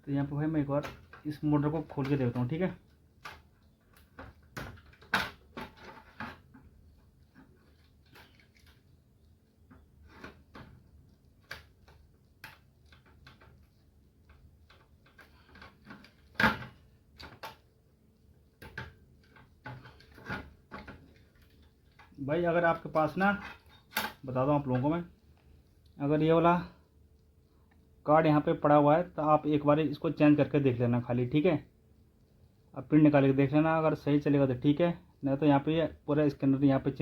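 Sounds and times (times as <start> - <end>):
small parts clicking and knocking: 0.7 - 26.0.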